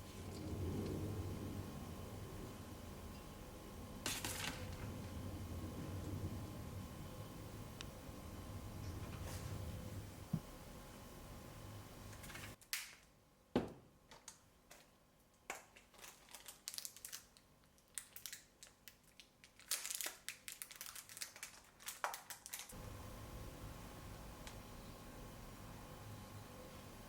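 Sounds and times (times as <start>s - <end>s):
crinkling and crushing: 4.0s - 5.2s, 14.1s - 22.8s.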